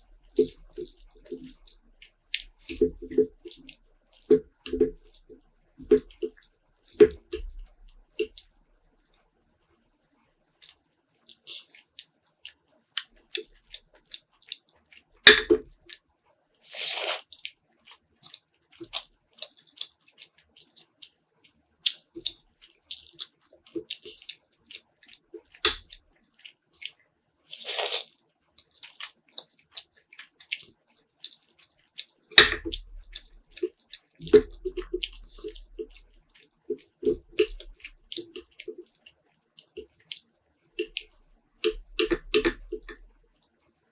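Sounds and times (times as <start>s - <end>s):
wet chewing clicks and smacks: 0.0s - 43.9s
person slurping: 0.3s - 1.8s, 16.7s - 17.2s, 27.5s - 28.1s.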